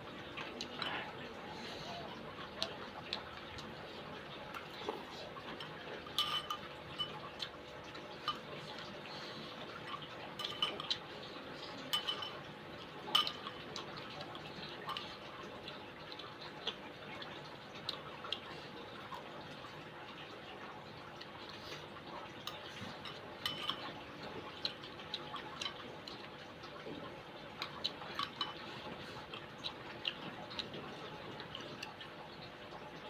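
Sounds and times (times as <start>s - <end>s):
spoon clinking against bowl: 5.6s - 7.4s, 9.8s - 11.0s, 11.8s - 12.5s, 13.1s - 13.6s, 23.0s - 24.0s.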